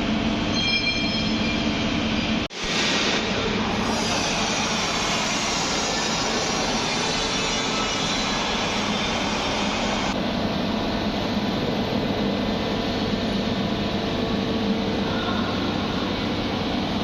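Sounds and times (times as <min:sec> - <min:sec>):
welding machine humming: 0:02.5 - 0:10.2.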